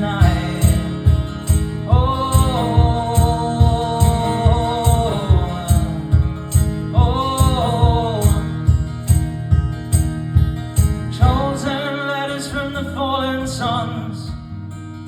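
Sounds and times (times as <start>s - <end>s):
acoustic guitar strumming: 0.0s - 15.0s
person singing wordless oh: 1.9s - 6.2s.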